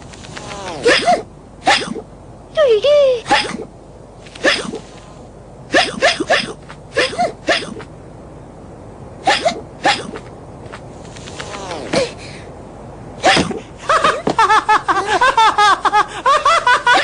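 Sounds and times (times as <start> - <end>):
cartoon hiccups: 0.5 - 2.1, 3.2 - 3.7, 4.4 - 4.8, 5.7 - 7.9, 9.2 - 10.3, 13.2 - 13.6
high-pitched laughter: 13.2 - 17.0.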